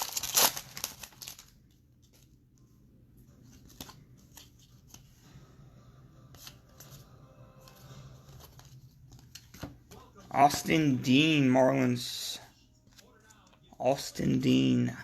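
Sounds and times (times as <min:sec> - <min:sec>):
cards being handled: 0:03.3 - 0:05.2, 0:06.3 - 0:11.4, 0:12.8 - 0:14.8.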